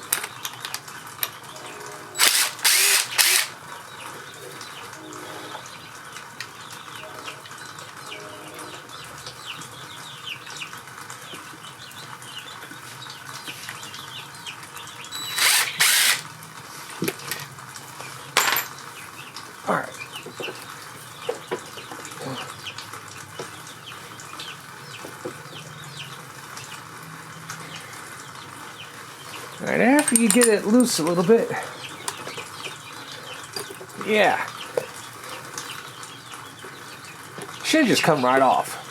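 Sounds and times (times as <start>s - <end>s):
power tool bursts: 2.2s - 3.6s, 15.2s - 16.3s
tools clinking on metal: 18.4s - 18.8s, 30.0s - 30.8s.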